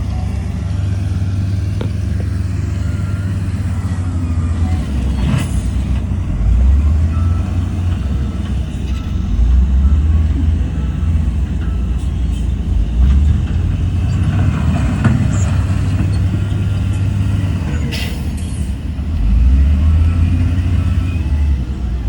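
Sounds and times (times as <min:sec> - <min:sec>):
heavy machinery engine rumble: 0:00.0 - 0:22.0.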